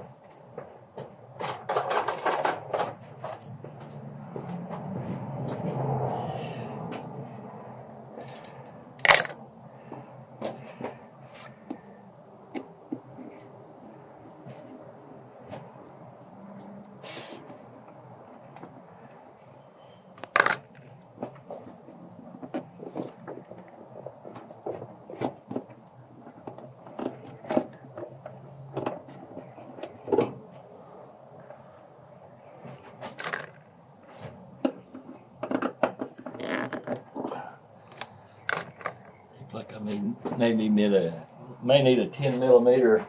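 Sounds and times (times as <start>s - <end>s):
metal tools clinking and rattling: 8.2s - 9.4s
hand tools clanking: 8.2s - 11.9s.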